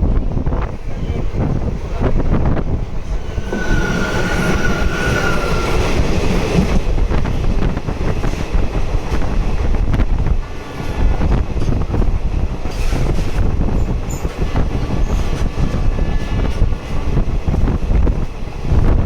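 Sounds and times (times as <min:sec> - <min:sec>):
train wheels rumbling: 0:00.0 - 0:19.0
rail clicks: 0:00.4 - 0:18.9
high squeal: 0:03.1 - 0:06.6.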